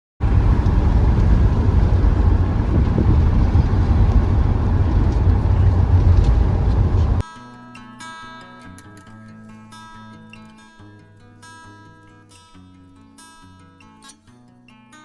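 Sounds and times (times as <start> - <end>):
vehicle rumbling: 0.0 - 7.2.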